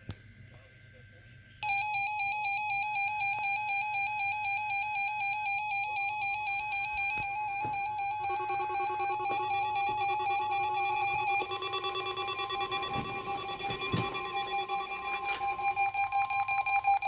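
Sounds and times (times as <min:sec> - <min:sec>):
warbling electronic alarm tone: 0:01.6 - 0:17.0
lower electronic tone: 0:06.9 - 0:17.0.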